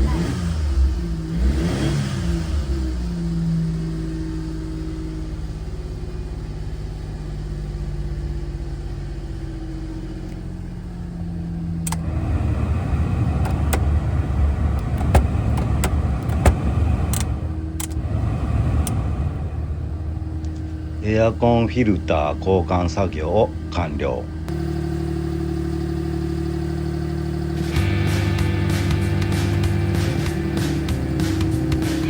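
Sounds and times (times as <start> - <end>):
car engine running: 0.0 - 32.0
sharp clicks and knocks: 11.8 - 12.0, 14.8 - 18.0.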